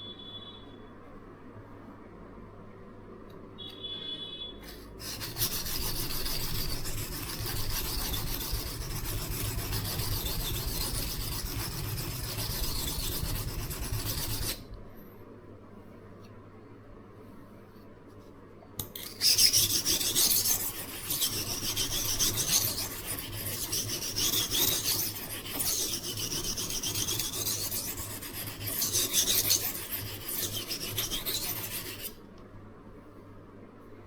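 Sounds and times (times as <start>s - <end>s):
knife scraping on sharpening stone: 4.7s - 14.6s, 18.8s - 32.2s.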